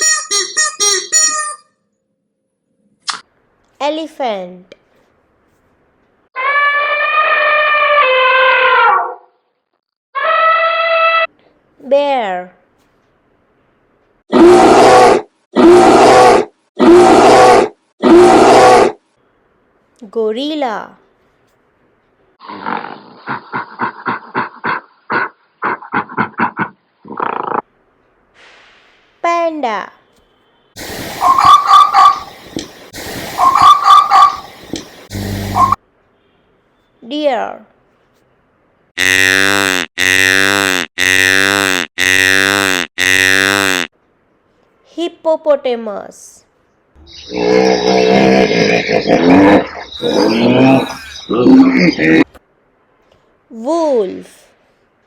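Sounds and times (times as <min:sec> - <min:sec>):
buzzy deer call: 0:10.2 - 0:11.3, 0:35.1 - 0:35.8
bear growling: 0:22.4 - 0:27.6, 0:47.1 - 0:52.4.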